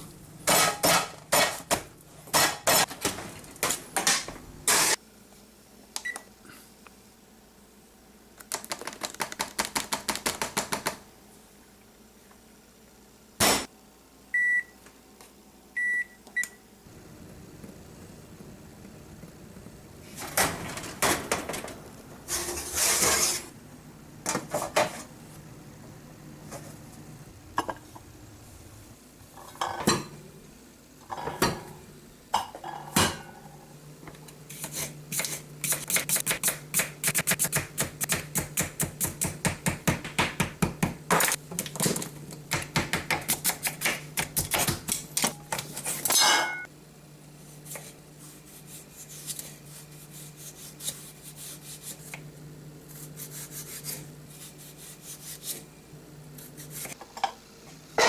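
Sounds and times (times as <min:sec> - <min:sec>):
steady low hum: 0:15.1 - 0:58.0.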